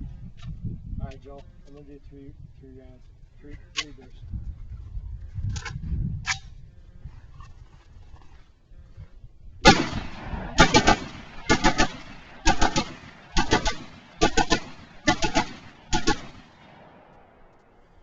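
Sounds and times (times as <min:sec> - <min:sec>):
rifle shots with echo: 0:09.6 - 0:18.0.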